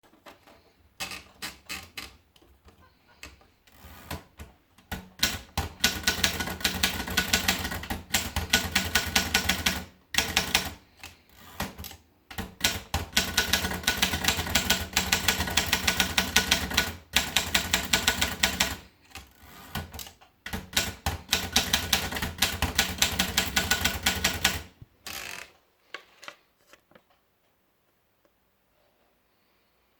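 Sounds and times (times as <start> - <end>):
typewriter keystrikes: 4.9 - 10.8, 11.6 - 18.9, 19.7 - 24.7.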